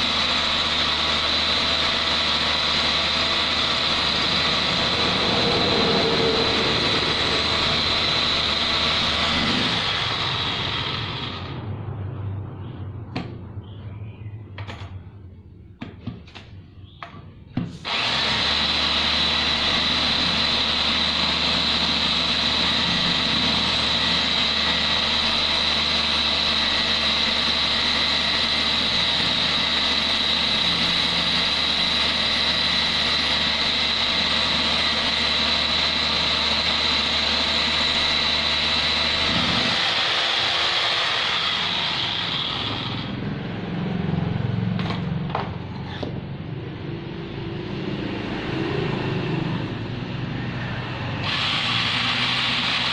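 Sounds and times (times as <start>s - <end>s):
concrete drill motor whining: 0.0s - 11.8s, 17.6s - 46.2s, 51.2s - 52.9s.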